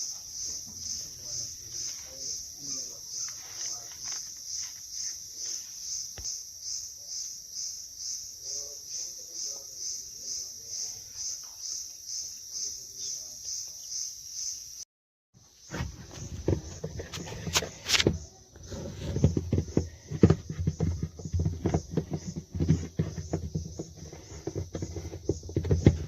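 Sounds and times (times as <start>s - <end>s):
faint voices: 0.0s - 5.8s
cricket chirping: 0.0s - 26.0s.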